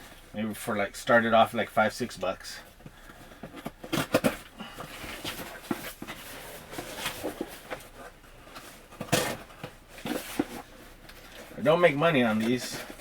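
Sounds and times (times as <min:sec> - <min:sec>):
packaging rustling: 0:03.1 - 0:13.0.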